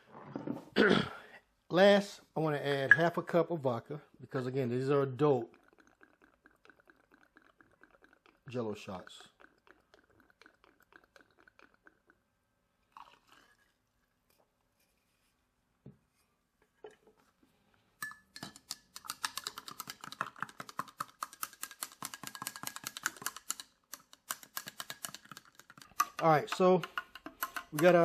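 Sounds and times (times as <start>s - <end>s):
whisk clicking against bowl: 18.4s - 28.0s.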